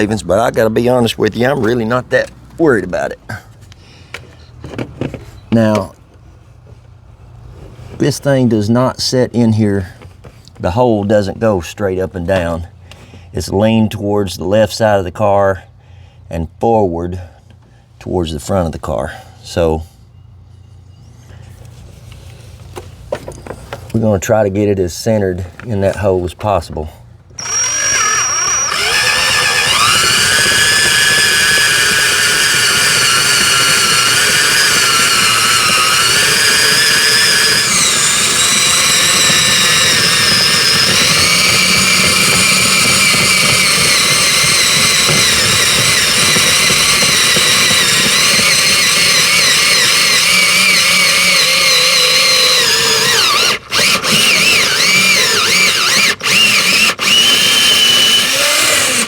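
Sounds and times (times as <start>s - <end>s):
electric drill whining: 27.4s - 59.0s.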